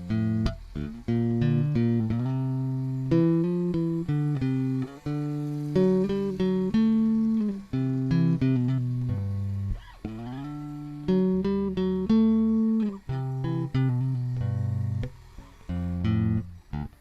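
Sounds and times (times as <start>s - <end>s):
plucked guitar notes: 0.0s - 17.0s.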